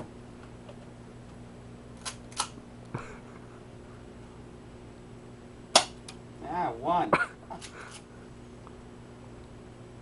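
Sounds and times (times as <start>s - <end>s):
sharp mechanical pistol clicks: 2.0s - 2.6s.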